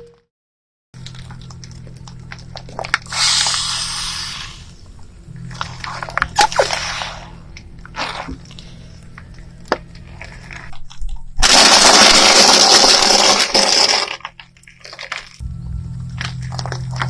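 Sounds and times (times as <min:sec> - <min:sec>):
brittle object crushed under tyre: 0:09.6 - 0:15.4.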